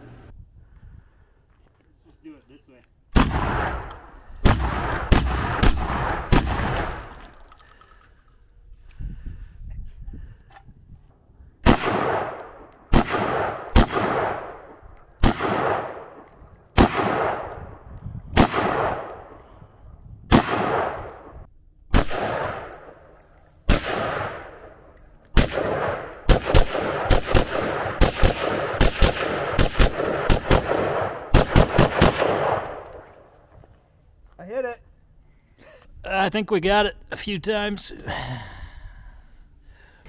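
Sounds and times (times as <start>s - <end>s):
gunshots with echo: 11.6s - 16.2s, 16.8s - 17.7s, 18.4s - 19.3s, 20.3s - 21.4s, 22.0s - 23.0s, 23.7s - 24.8s, 25.4s - 33.0s.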